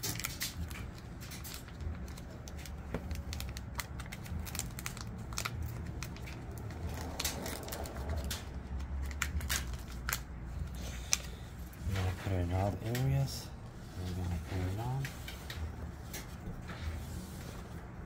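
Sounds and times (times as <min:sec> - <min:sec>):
plastic packaging crinkling: 0:00.0 - 0:11.3
steady low hum: 0:00.2 - 0:18.0.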